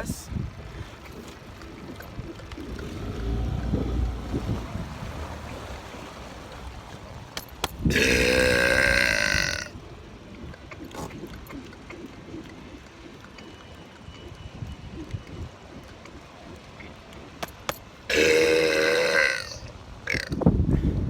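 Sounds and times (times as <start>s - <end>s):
moving boat noise: 0.0s - 21.0s
loud drawn-out burp: 7.9s - 9.7s, 18.1s - 20.4s.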